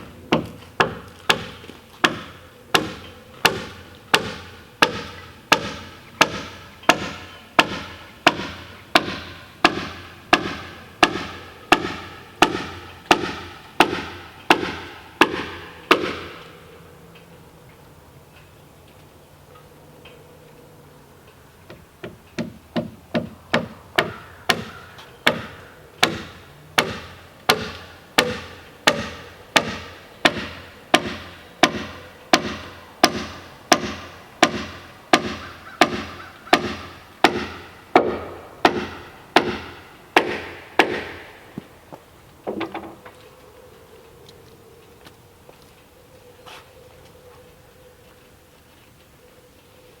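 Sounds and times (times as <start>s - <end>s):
hand tool striking wood: 0.3s - 16.5s, 22.0s - 41.7s.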